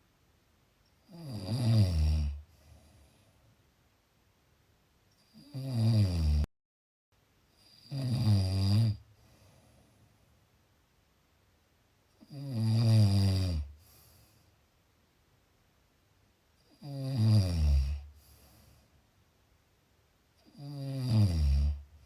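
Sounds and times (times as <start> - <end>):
person snoring: 1.1 - 2.5, 5.4 - 6.5, 7.6 - 9.0, 12.2 - 13.9, 16.8 - 18.2, 20.5 - 21.9.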